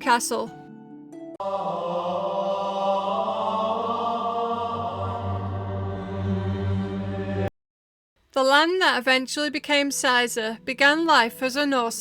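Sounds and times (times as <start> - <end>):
held music chord: 0.7 - 7.5
low drone: 1.4 - 7.5.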